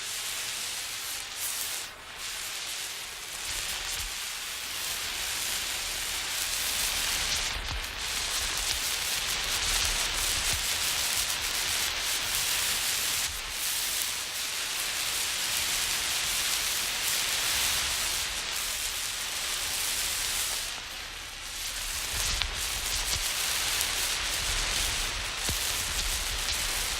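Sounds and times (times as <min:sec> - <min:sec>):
flare burning with a hiss: 0:00.0 - 0:26.9.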